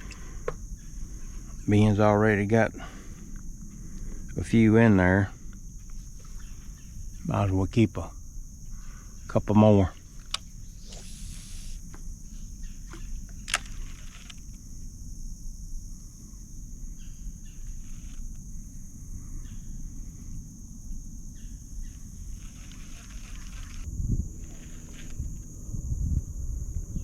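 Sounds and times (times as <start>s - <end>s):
insects droning: 0.0s - 27.0s
low rumble: 23.8s - 27.0s.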